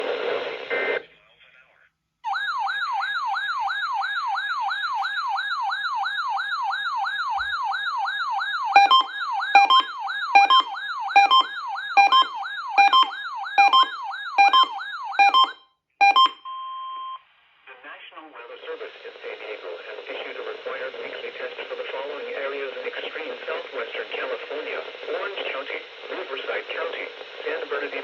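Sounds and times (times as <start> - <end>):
warbling electronic siren: 2.3 - 16.3
loud two-tone beeps: 8.8 - 17.2.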